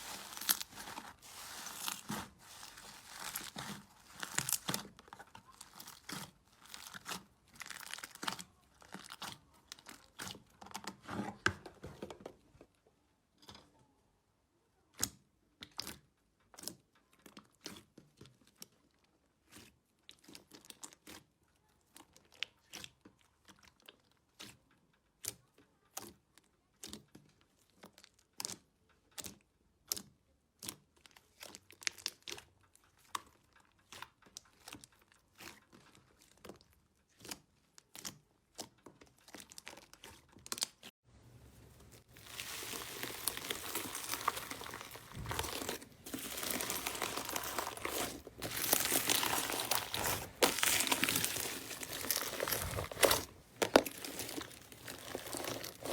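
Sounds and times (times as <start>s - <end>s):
slime crackling and popping: 0.0s - 10.8s, 42.0s - 55.9s.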